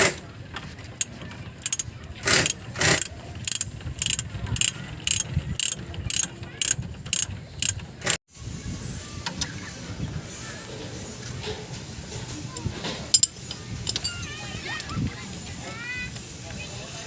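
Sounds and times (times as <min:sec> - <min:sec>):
ratchet wrench clicking: 0:01.0 - 0:08.2, 0:13.1 - 0:15.0.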